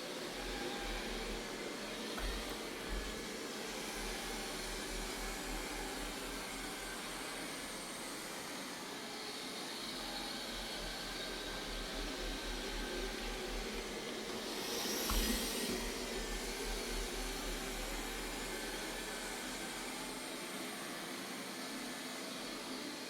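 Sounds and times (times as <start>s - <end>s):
robot vacuum whirring: 0.2s - 6.8s.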